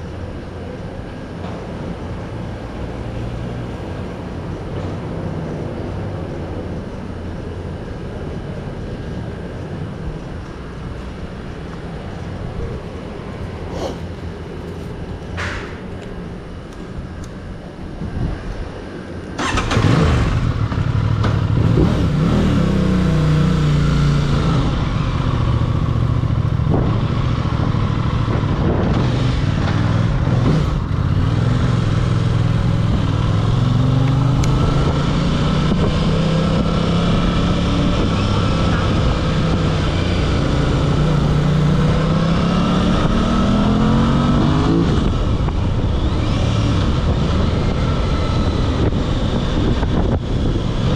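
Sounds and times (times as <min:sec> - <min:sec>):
motorcycle engine accelerating: 0:19.4 - 0:50.9.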